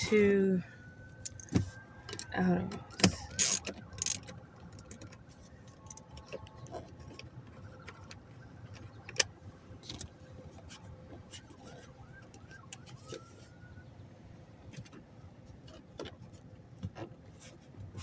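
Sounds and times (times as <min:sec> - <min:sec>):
socket ratchet clicking: 0:03.0 - 0:04.2.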